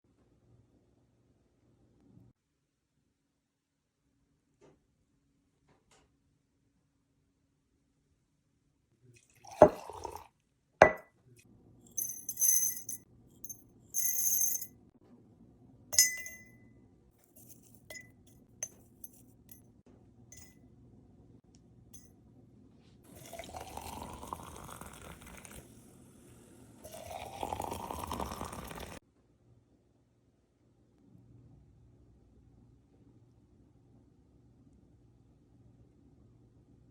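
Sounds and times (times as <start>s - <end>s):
liquid pouring into a glass: 9.2s - 11.0s, 23.1s - 29.0s
glass clinking: 9.5s - 10.2s, 10.8s - 11.1s, 12.0s - 14.7s, 16.0s - 16.6s, 17.4s - 19.3s, 20.4s - 20.6s, 23.2s - 25.6s, 26.9s - 29.0s.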